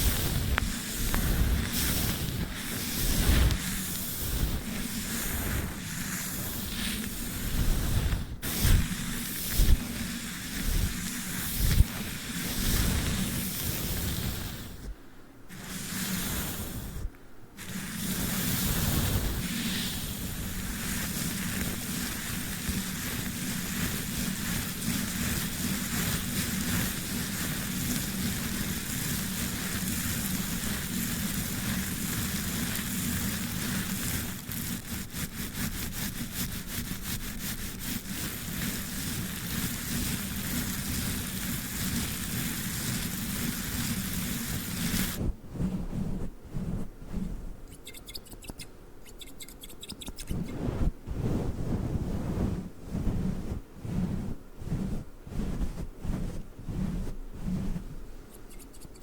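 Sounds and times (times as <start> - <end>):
brush scrubbing over microphone: 0.0 - 14.8, 15.5 - 47.8.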